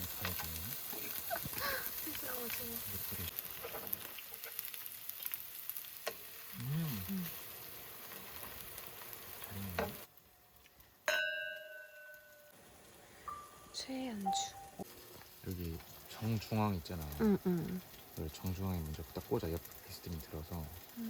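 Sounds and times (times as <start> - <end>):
food sizzling in a pan: 0.0 - 21.0
short vocal sounds: 6.6 - 7.4
ringing chime tone: 13.3 - 14.8.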